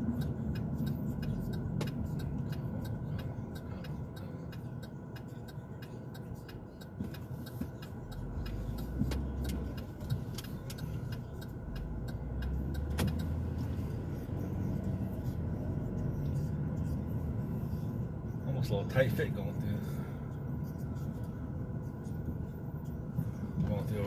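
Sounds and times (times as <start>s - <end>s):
light clicks and ticks: 0.0s - 17.8s
car engine and road rumble: 0.0s - 24.0s.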